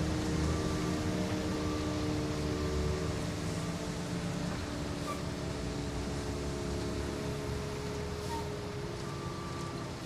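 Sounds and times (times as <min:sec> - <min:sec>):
warning siren steady chord: 0:00.0 - 0:04.9.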